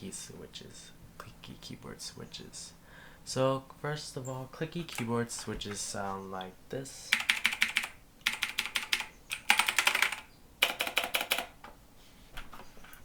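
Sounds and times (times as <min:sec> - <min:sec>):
clicky mechanical keyboard typing: 0:04.8 - 0:05.2, 0:07.1 - 0:11.6.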